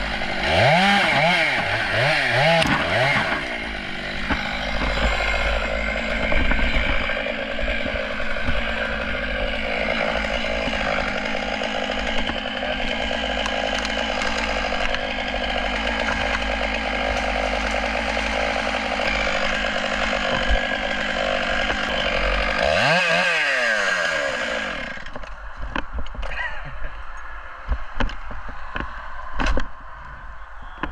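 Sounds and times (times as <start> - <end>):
chainsaw cutting at full throttle: 0.0 - 25.3
tree cracking and knocking: 0.5 - 26.4.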